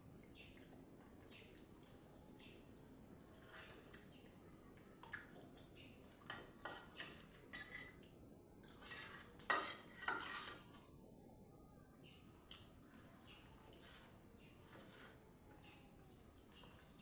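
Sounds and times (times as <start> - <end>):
spoon clinking against a dish: 8.6 - 10.9.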